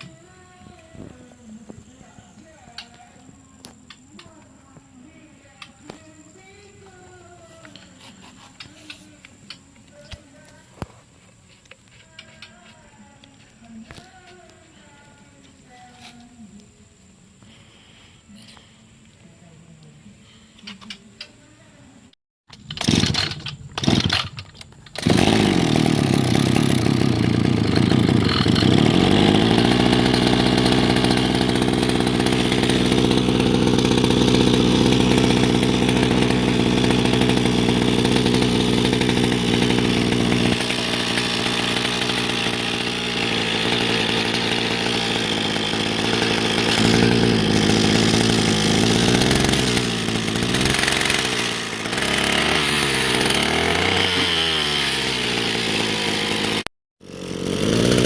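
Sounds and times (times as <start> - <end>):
brush cutter engine revving: 22.5 - 58.0.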